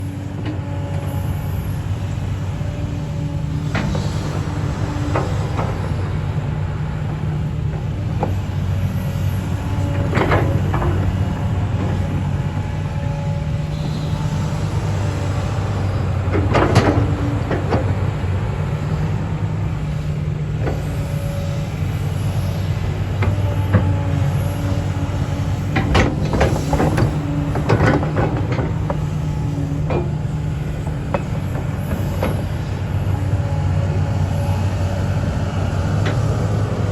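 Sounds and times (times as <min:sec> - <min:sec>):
excavator diesel engine running: 0:00.0 - 0:36.9
metallic clanks and squeals: 0:09.6 - 0:12.3, 0:13.5 - 0:18.0, 0:23.1 - 0:33.4.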